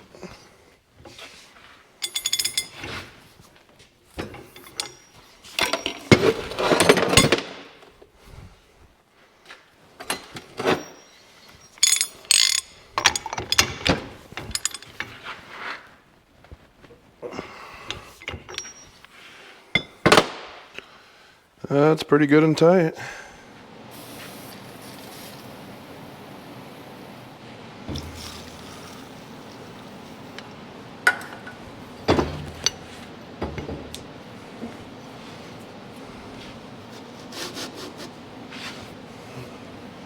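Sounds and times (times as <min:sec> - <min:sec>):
metal clinks: 0:02.0 - 0:03.0, 0:04.4 - 0:06.1, 0:10.6 - 0:15.1, 0:18.2 - 0:19.0, 0:31.4 - 0:33.0.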